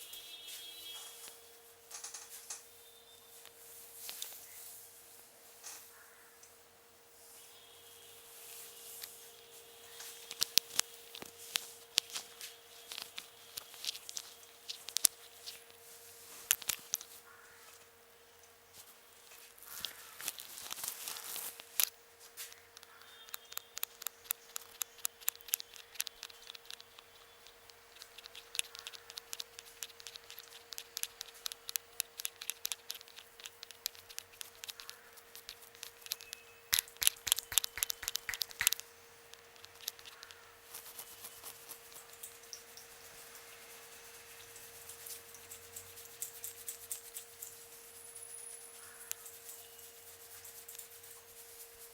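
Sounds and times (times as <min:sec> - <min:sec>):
hands rubbing the head: 0:24.6 - 0:38.9, 0:39.6 - 0:51.9
hands patting the head: 0:32.2 - 0:38.9.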